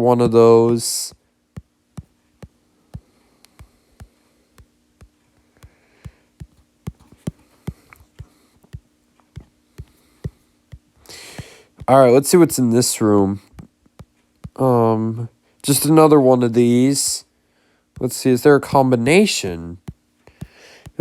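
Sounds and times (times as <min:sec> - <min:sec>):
faint steady hum: 0:00.0 - 0:21.0
computer mouse clicking: 0:03.4 - 0:04.1, 0:05.0 - 0:08.8.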